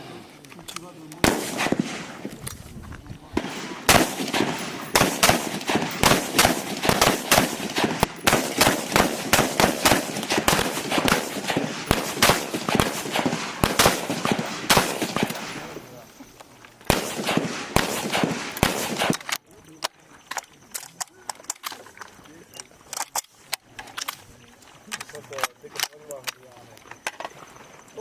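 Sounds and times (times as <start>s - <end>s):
rifle gunshots overlapping: 0.0s - 2.6s, 3.2s - 16.0s, 16.9s - 19.4s.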